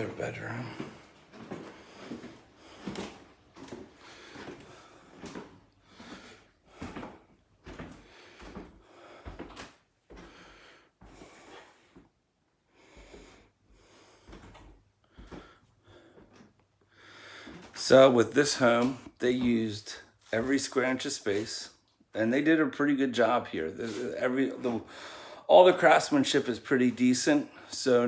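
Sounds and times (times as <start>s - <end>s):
footsteps: 0.0s - 12.2s, 12.8s - 21.8s, 23.2s - 28.0s
breathing close to microphone: 0.6s - 12.1s, 12.7s - 17.8s, 24.8s - 25.5s.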